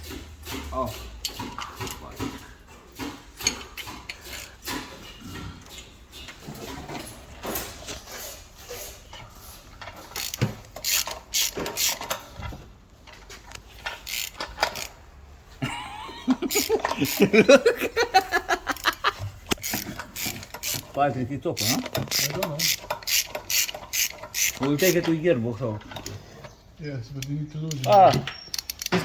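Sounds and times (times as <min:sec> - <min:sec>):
metallic clicks and knocks: 0:03.0 - 0:07.6, 0:18.2 - 0:25.2, 0:27.2 - 0:29.0
ratchet clicking: 0:03.4 - 0:04.6, 0:10.0 - 0:12.2, 0:13.8 - 0:15.0, 0:18.7 - 0:21.0, 0:21.6 - 0:25.1, 0:27.2 - 0:29.0
people laughing: 0:15.6 - 0:19.5.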